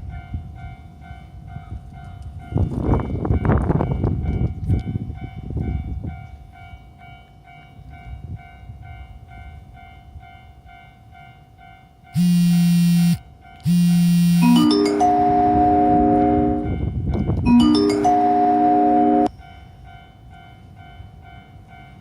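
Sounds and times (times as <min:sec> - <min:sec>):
passing train rumble: 0:00.0 - 0:12.2, 0:14.4 - 0:22.0
level crossing warning bell: 0:00.0 - 0:22.0
long low tones: 0:12.2 - 0:19.3.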